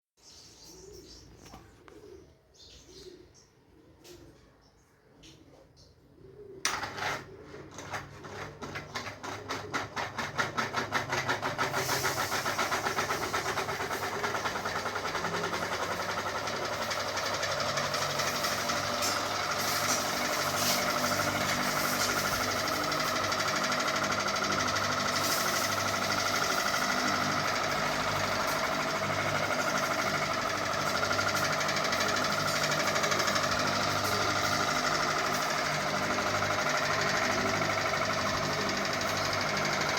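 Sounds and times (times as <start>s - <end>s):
ceiling fan whirring and clacking: 6.6s - 39.9s.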